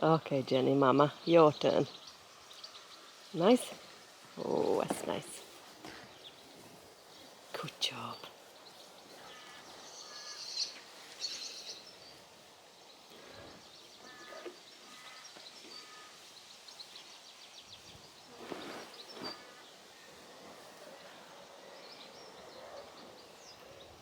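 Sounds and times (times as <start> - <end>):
birds chirping: 0.0 - 24.0
faint outdoor background noise: 0.0 - 24.0
scratchy rustle: 17.8 - 21.3.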